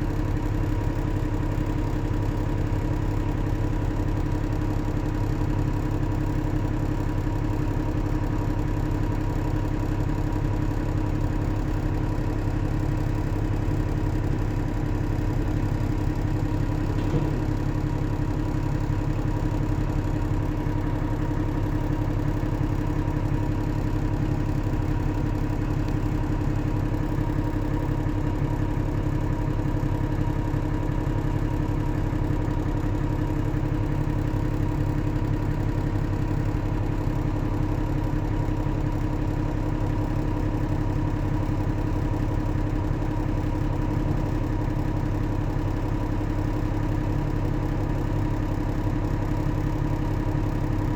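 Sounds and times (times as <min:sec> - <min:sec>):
diesel engine running steadily: 0:00.0 - 0:50.9
brief knock: 0:16.9 - 0:17.4.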